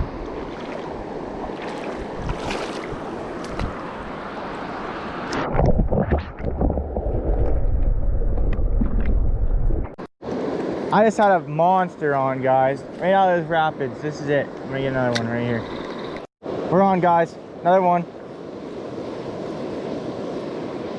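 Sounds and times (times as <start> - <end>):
wind buffeting microphone: 0.0 - 4.2.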